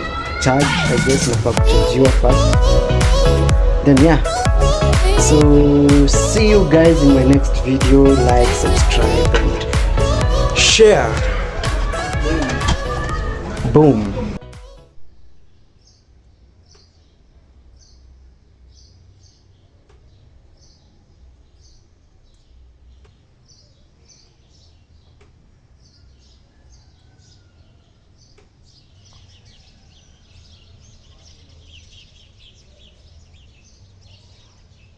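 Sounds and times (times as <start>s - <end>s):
faint birds chirping: 15.2s - 34.9s.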